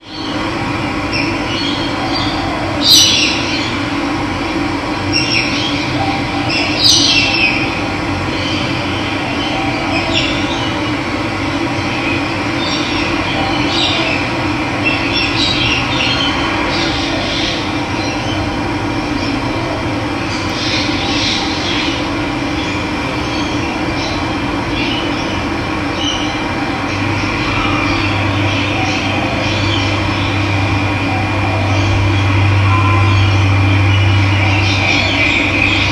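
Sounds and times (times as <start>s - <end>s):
birds calling: 0.0s - 4.0s, 5.0s - 19.6s, 20.2s - 35.9s.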